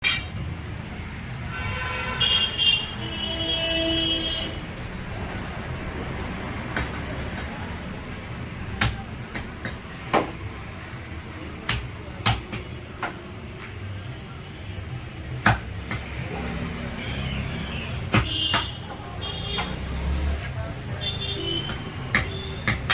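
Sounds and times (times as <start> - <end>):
background traffic: 0.0 - 22.9
vehicle horn: 1.5 - 4.6
cleaver chopping meat: 8.7 - 10.4, 11.6 - 12.7, 18.1 - 18.8, 21.6 - 22.9.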